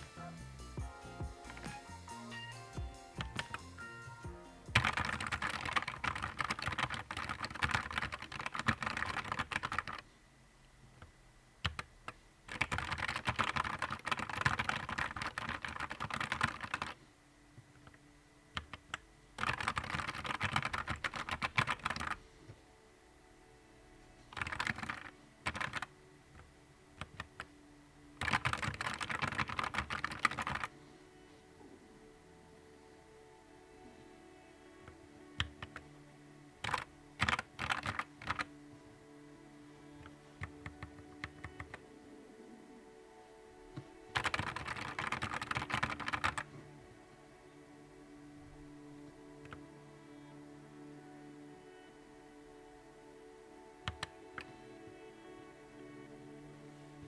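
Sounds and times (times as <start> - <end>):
quiet background music: 0.0 - 57.0
rapid mechanical keyboard typing: 3.2 - 3.7, 4.7 - 10.0, 11.6 - 11.9, 12.5 - 17.0, 18.6 - 22.2, 24.3 - 25.9, 27.0 - 27.5, 28.2 - 30.7, 35.4 - 35.8, 36.6 - 38.5, 40.0 - 41.8, 44.1 - 46.5, 53.8 - 54.5.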